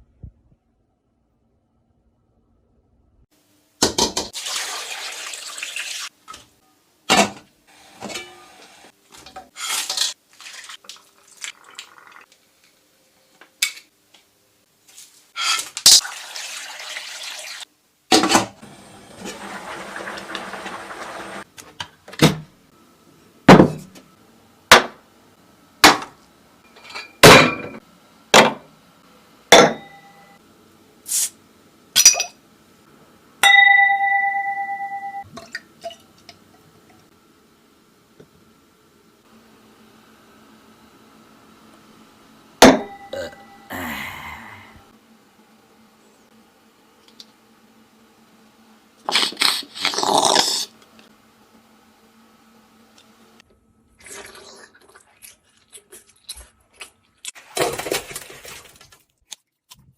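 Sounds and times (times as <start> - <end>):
water running from a tap: 4.4 - 6.1, 16.0 - 17.7, 19.3 - 21.4
dishes and utensils clinking: 26.7 - 27.8.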